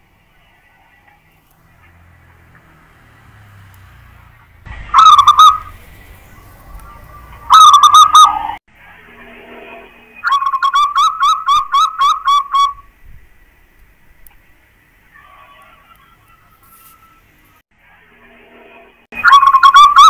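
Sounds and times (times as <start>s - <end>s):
dove cooing: 4.9s - 8.5s.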